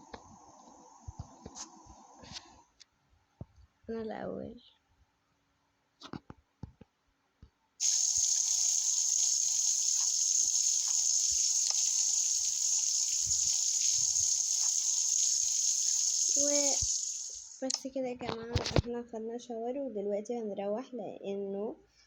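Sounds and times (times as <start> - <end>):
shower water spraying: 7.8 - 17.7.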